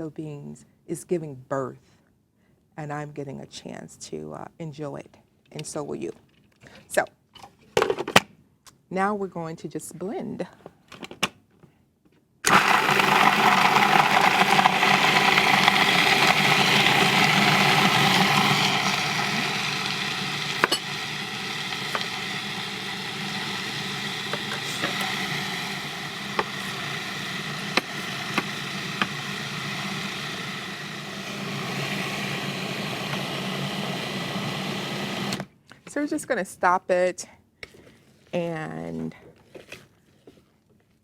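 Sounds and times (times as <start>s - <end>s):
electric blender running: 12.5s - 35.5s.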